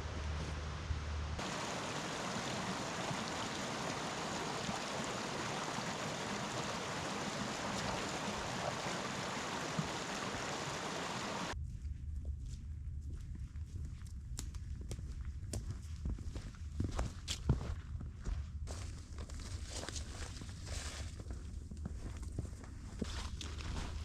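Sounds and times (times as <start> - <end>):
low rumble: 0.0 - 1.4
running water rushing: 1.4 - 11.6.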